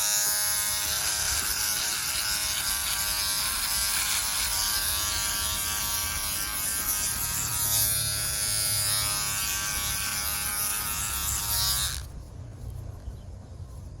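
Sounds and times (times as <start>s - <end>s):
electric trimmer buzzing: 0.0s - 12.1s.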